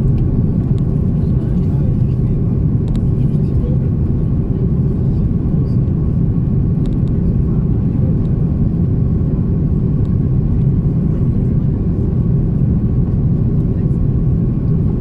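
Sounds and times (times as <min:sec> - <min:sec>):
airliner cabin rumble: 0:00.0 - 0:15.0.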